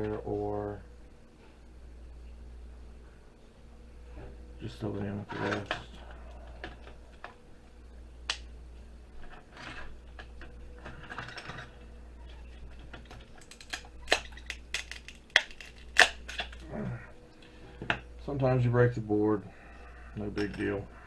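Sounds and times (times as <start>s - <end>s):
pliers snapping circuit components: 13.0s - 16.6s.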